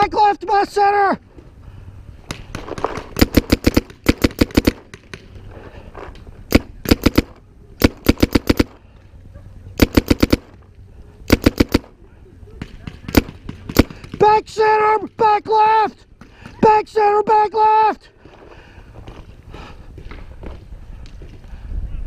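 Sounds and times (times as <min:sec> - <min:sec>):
paintball markers firing: 0:02.2 - 0:05.4, 0:06.5 - 0:08.8, 0:09.8 - 0:10.7, 0:11.3 - 0:12.0, 0:12.6 - 0:14.3.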